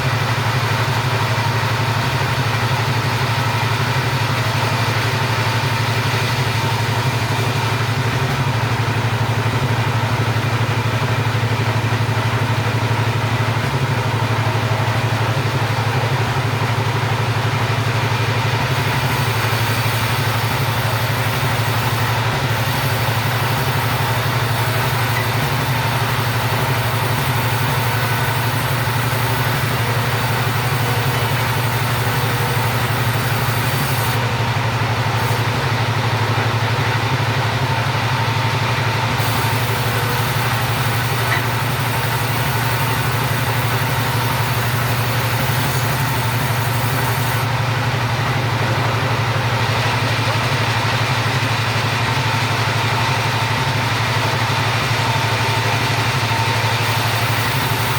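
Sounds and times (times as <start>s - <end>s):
chainsaw cutting timber: 17.9s - 37.1s, 38.8s - 47.7s, 50.0s - 57.9s.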